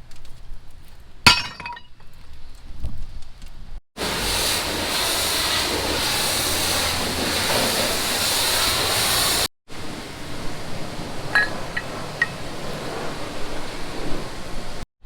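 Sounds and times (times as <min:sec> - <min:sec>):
power tool cutting: 0:04.0 - 0:09.5.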